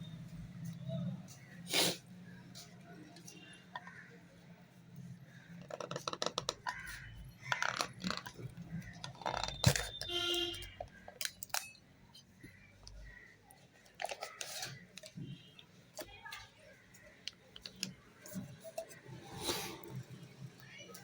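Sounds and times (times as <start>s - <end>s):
wristwatch and box clicking: 5.6s - 11.8s.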